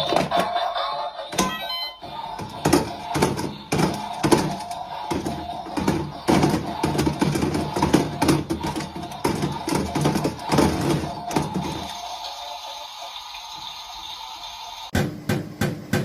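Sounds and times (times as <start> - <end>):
rhythmic music: 0.0 - 12.1
running water hiss: 11.6 - 14.9.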